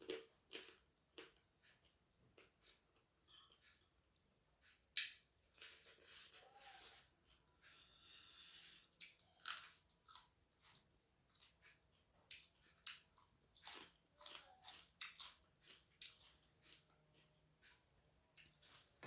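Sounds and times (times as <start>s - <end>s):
food crunching: 0.0s - 1.8s, 9.0s - 18.9s
person chewing food: 0.0s - 19.0s
wet mouth clicks and smacks: 5.0s - 5.2s.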